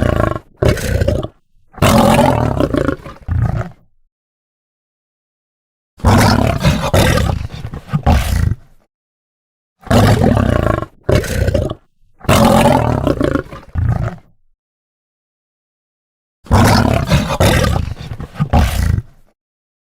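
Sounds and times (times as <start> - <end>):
lion roaring: 0.0 - 3.9, 6.0 - 8.9, 9.8 - 14.4, 16.5 - 19.3.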